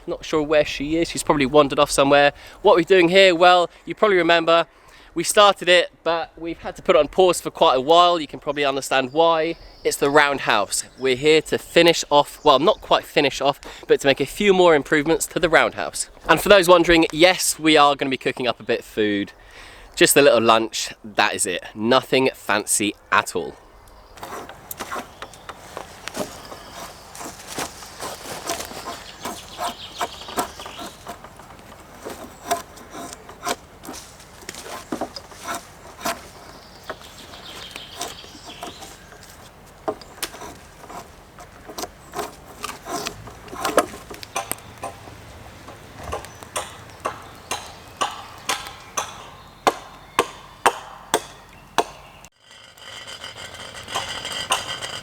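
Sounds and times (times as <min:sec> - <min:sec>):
axe chopping wood: 0:39.8 - 0:41.1, 0:46.0 - 0:52.2.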